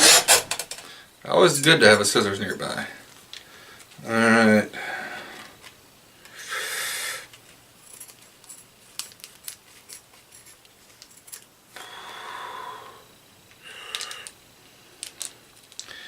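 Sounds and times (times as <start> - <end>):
plastic packet crinkling: 8.1 - 11.4, 15.0 - 16.0
plastic packet rustling: 8.1 - 11.4.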